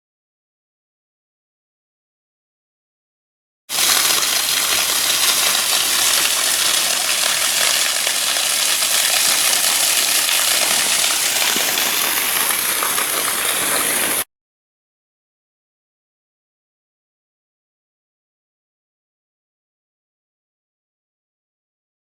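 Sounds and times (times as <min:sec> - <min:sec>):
waterfall splashing into pool: 0:03.7 - 0:14.3.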